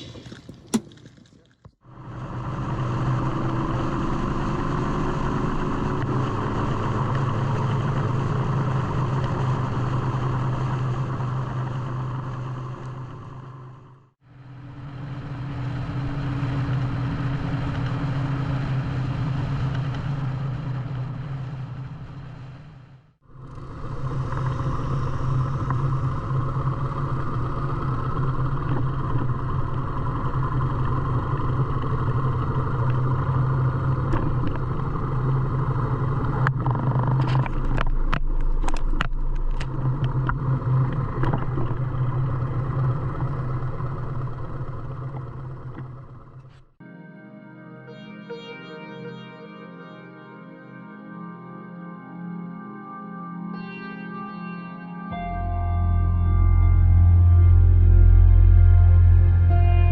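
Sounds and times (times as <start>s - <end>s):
motorcycle engine cruising: 0.0s - 46.8s, 55.1s - 59.9s
wind and road noise: 0.0s - 46.8s.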